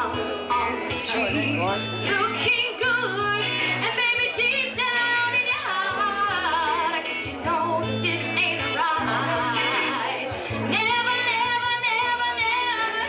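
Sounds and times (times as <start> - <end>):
backing track with bass line: 0.0 - 13.0
woman singing with vibrato: 0.0 - 13.0.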